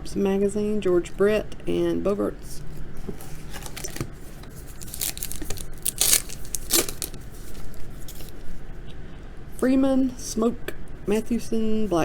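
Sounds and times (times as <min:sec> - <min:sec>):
wrapper tearing and crinkling: 0:03.2 - 0:08.4.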